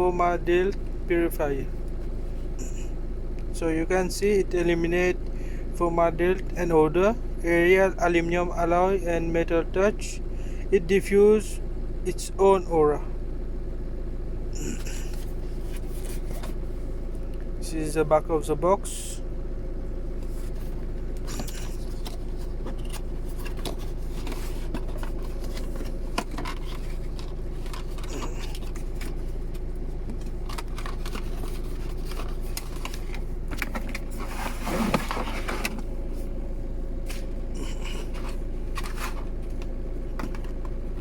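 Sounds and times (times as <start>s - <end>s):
steady low hum: 0.0s - 41.0s
cardboard and plastic packaging rustling: 20.2s - 36.3s, 37.0s - 41.0s.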